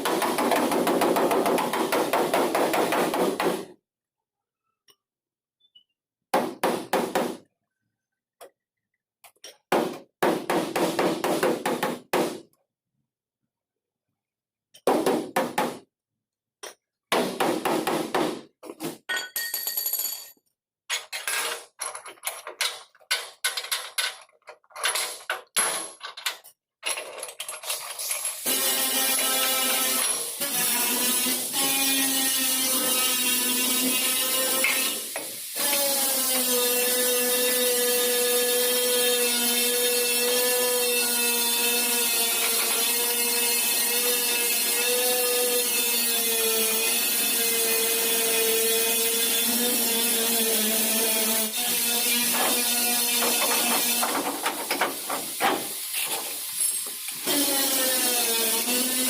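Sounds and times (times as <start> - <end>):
hammer tapping on sheet metal: 0.0 - 3.7.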